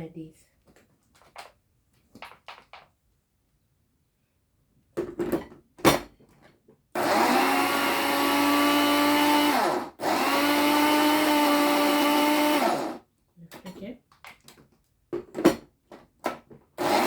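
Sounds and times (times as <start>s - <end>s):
blender motor whining: 7.0s - 13.0s, 16.8s - 17.0s.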